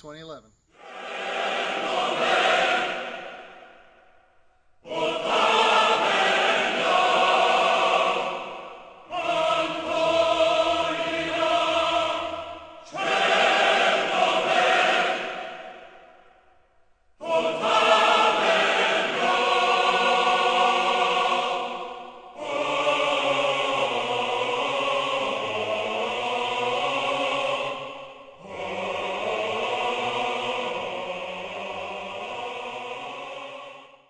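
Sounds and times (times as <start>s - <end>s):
choir holding long chords: 0.7s - 34.0s.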